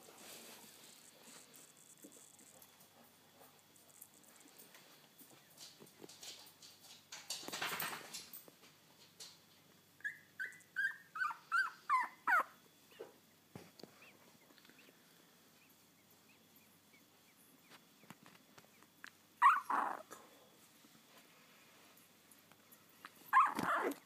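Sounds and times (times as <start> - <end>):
puppies whimpering and squealing: 10.0 - 13.1, 19.4 - 20.1, 23.3 - 24.0.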